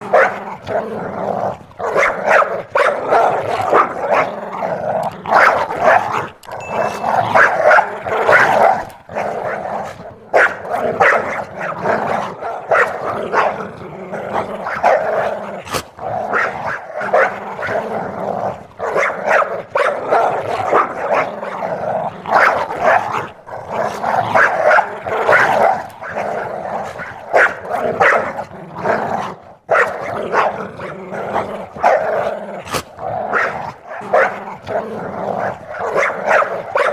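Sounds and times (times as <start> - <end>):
dog barking rapidly: 0.0 - 0.8, 1.8 - 13.7, 14.4 - 17.9, 18.6 - 21.6, 22.2 - 28.5, 29.1 - 36.9
dog growling: 0.0 - 36.9.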